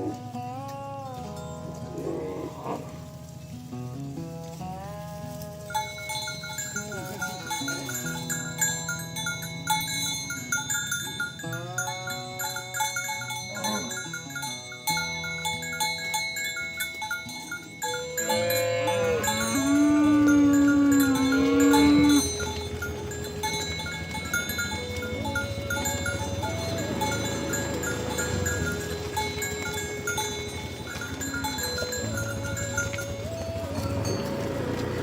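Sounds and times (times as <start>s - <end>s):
cattle mooing: 0.0s - 0.3s, 1.9s - 3.2s, 17.9s - 35.0s
cowbells clanking: 0.0s - 35.0s.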